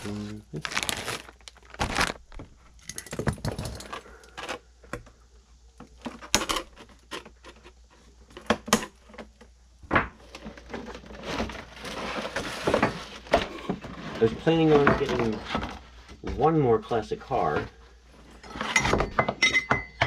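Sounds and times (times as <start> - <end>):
packaging rustling and clicking: 0.0 - 4.6.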